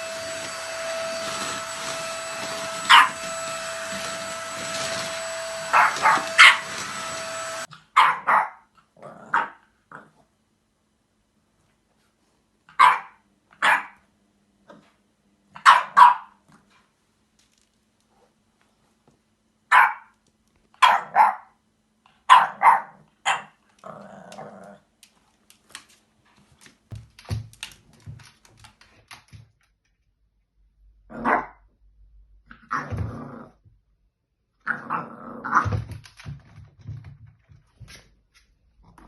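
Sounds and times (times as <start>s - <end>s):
dog barking: 2.9s - 3.2s, 5.7s - 6.7s, 7.9s - 8.7s, 9.3s - 9.6s, 12.7s - 14.0s, 15.6s - 16.4s, 19.7s - 20.1s, 20.8s - 21.6s, 22.2s - 23.6s
dog growling: 23.8s - 24.9s, 32.5s - 33.6s, 34.6s - 35.6s.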